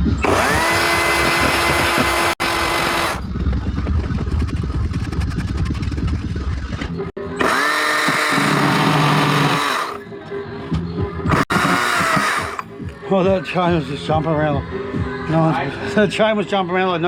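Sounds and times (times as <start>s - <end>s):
power tool motor running: 0.0s - 3.2s, 7.4s - 10.0s, 11.3s - 12.7s.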